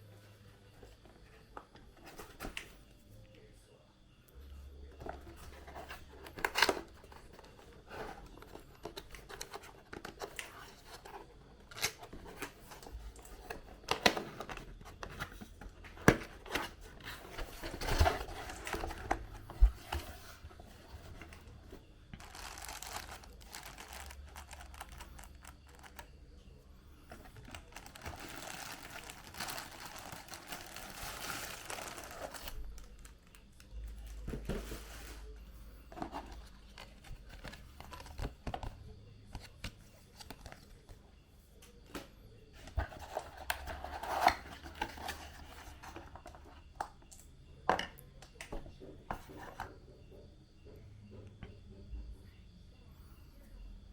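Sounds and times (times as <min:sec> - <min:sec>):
material crinkling and rustling: 0:05.0 - 0:26.1, 0:27.0 - 0:35.3.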